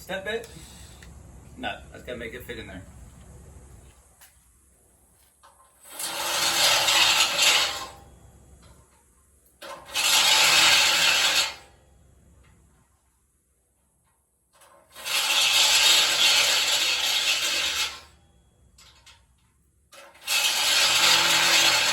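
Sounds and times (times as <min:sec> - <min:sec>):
drill cutting into steel: 0:05.8 - 0:08.0, 0:09.6 - 0:11.7, 0:14.9 - 0:18.2, 0:20.0 - 0:21.9.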